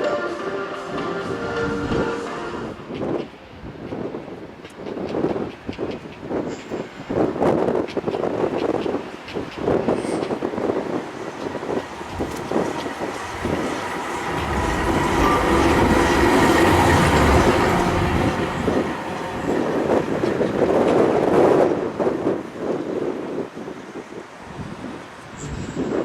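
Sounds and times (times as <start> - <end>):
tram passing on rails: 0.0 - 26.0.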